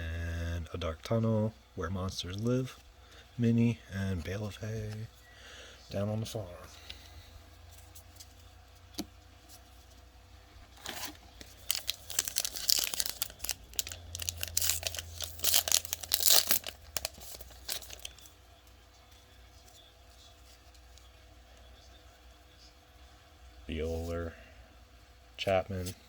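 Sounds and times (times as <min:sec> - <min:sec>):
wrapper tearing and crinkling: 0:10.8 - 0:18.2.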